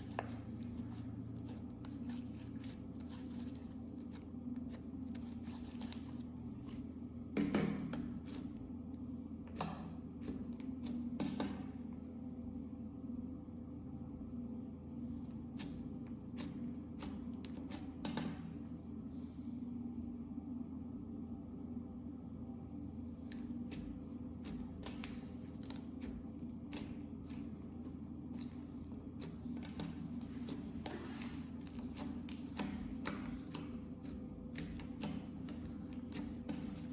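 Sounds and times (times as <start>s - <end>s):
slime squelching: 0.0s - 12.0s, 15.1s - 18.7s, 23.1s - 36.9s.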